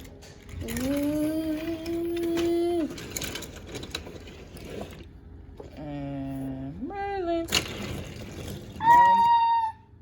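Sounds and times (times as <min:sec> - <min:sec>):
plastic toy trains rattling: 0:00.0 - 0:05.1, 0:07.4 - 0:09.4.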